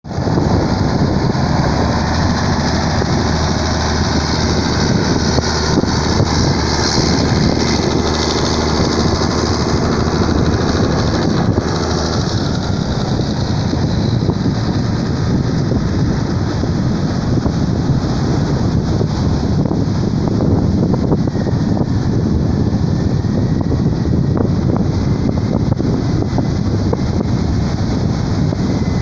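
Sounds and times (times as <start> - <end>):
rough surf: 0.0 - 29.0
wind: 0.0 - 29.0
motor running: 0.1 - 18.5.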